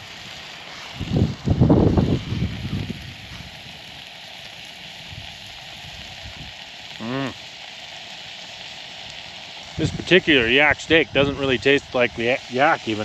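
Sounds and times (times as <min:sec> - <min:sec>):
campfire sizzling: 0:00.0 - 0:13.0
person humming: 0:07.0 - 0:07.4.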